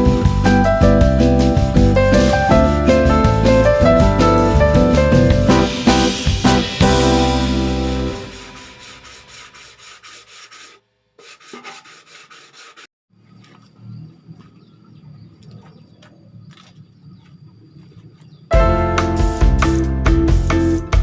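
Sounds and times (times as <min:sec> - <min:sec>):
hand rubbing metal tank: 0:07.9 - 0:13.6.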